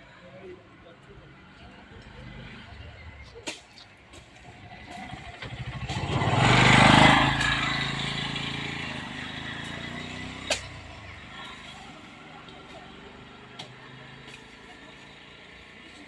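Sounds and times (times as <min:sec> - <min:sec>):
vehicle engine passing by: 0:01.4 - 0:03.4, 0:04.4 - 0:16.0.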